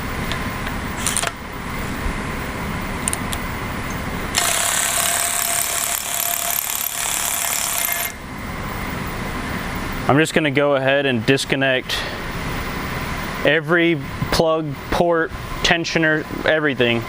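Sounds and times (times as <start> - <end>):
steady garage hum: 0.0 - 17.0
impact wrench running: 4.3 - 8.2.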